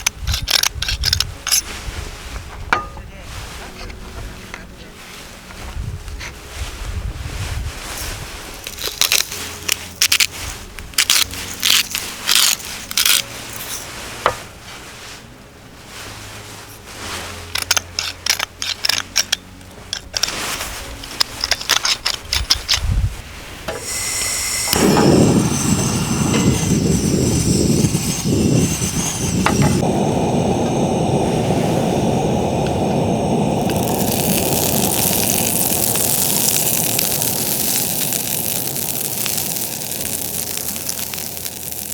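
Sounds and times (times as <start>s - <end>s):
wood fire crackling and popping: 8.4s - 10.4s, 23.8s - 41.9s
loud steady rushing noise: 23.9s - 41.9s.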